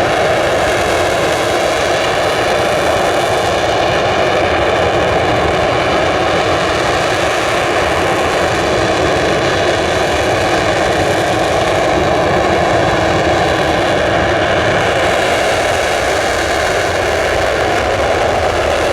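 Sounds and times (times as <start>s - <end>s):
jet engines roaring: 0.0s - 18.9s.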